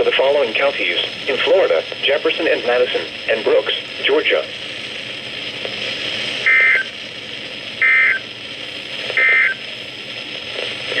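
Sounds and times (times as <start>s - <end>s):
radio hiss: 0.0s - 11.0s
short data bursts: 6.3s - 7.0s, 7.8s - 8.4s, 9.0s - 9.7s.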